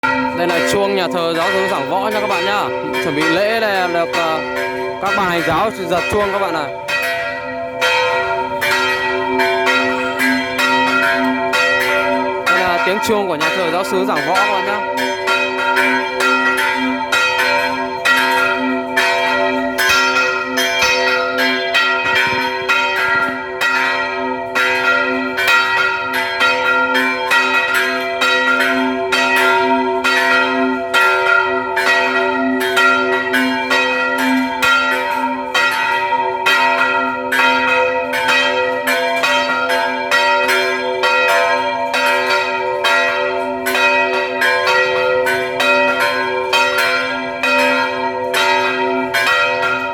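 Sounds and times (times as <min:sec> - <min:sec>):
church bells pealing: 0:00.0 - 0:49.9.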